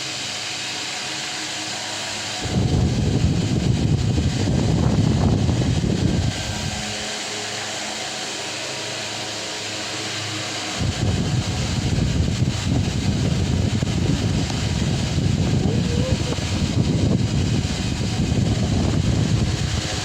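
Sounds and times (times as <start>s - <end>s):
fan motor hum: 0.0s - 20.0s
wind rumbling on microphone: 2.2s - 8.2s, 10.6s - 20.0s.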